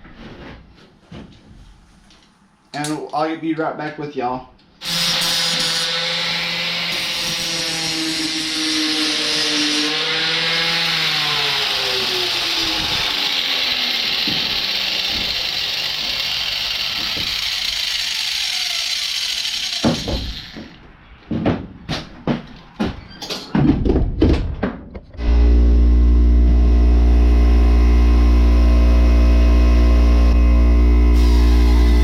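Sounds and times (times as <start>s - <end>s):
angle grinder grinding steel: 4.8s - 20.8s, 27.4s - 32.0s
motor humming loudly: 11.2s - 20.8s, 25.2s - 32.0s.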